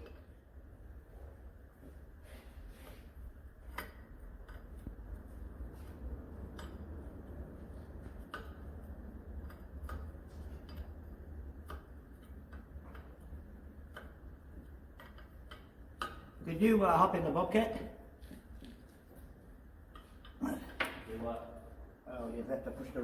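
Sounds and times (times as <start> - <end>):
tools clicking and tapping on metal: 3.6 - 5.2, 6.4 - 7.4, 8.0 - 16.4.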